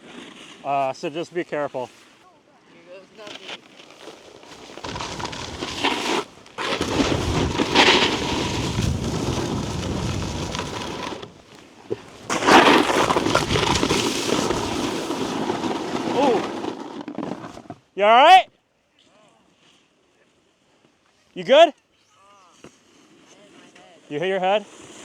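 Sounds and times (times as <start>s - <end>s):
snowboard edges scraping snow: 0.0s - 17.9s, 19.4s - 25.0s.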